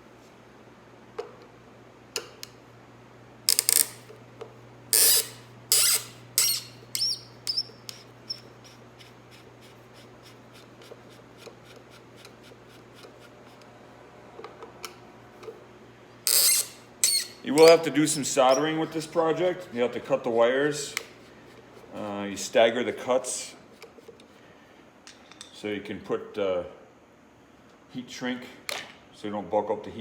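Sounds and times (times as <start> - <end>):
hand tools scraping and clattering: 16.3 - 24.3.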